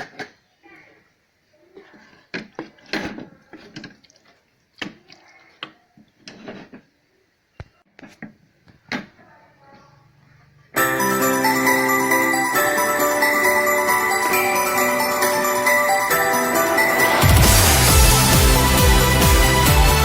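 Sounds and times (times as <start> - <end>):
loud music with chiming notes: 10.8 - 20.0.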